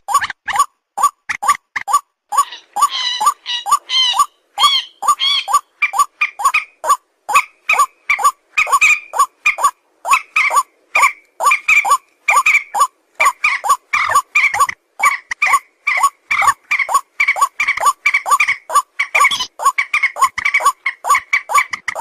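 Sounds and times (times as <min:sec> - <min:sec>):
animal squeaky calls: 0:00.0 - 0:22.0.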